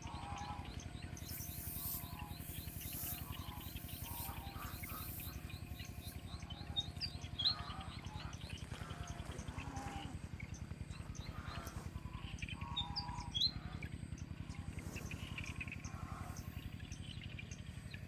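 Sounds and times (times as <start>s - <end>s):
small bird chirps: 0.5s - 7.6s
fast low pulsing: 1.2s - 6.5s.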